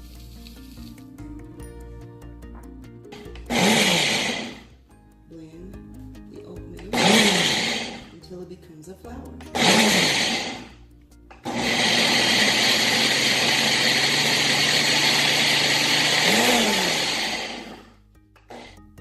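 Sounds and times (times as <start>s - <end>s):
blender grinding oats: 3.2s - 4.7s, 6.9s - 8.2s, 9.5s - 10.8s, 11.4s - 19.0s.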